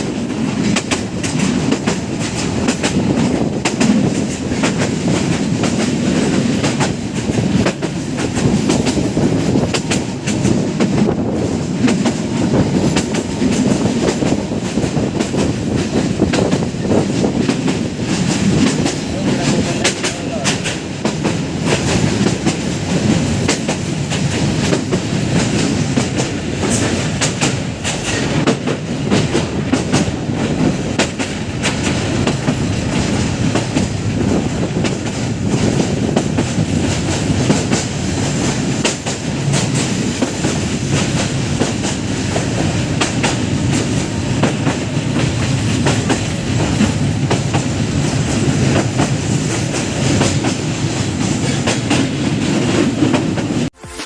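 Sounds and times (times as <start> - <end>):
wheels clicking over rail joints: 0.0 - 53.6
train wheel rumble: 0.0 - 54.0.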